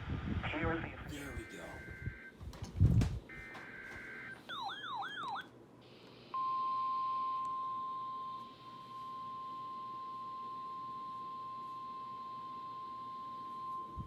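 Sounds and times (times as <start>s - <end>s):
steady alarm tone: 1.1s - 2.4s, 3.3s - 5.5s
warbling siren sweep: 4.5s - 5.5s.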